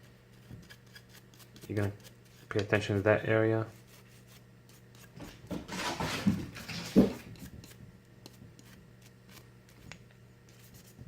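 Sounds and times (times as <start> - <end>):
rustling and scraping: 3.7 - 11.0.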